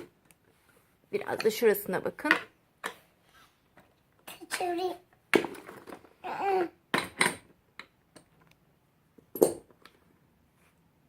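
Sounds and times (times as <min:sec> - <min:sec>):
child vocal sound: 0:06.2 - 0:06.8.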